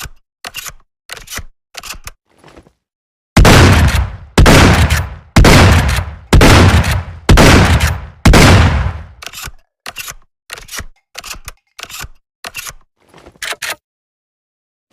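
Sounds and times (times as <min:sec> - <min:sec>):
shotgun shots with echo: 0:03.4 - 0:09.2
gun mechanical clicks: 0:03.7 - 0:08.2, 0:08.8 - 0:12.8.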